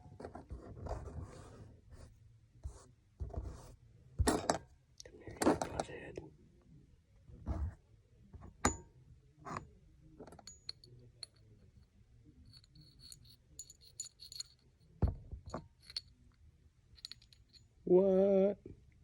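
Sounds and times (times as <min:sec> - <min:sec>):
small metallic clicks and clinks: 0:09.5 - 0:17.8.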